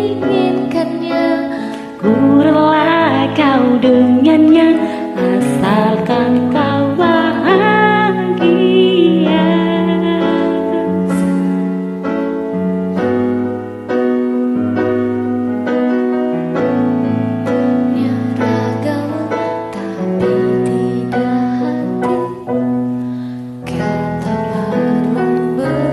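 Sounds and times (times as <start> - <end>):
sustained piano chords: 0.0 - 25.9.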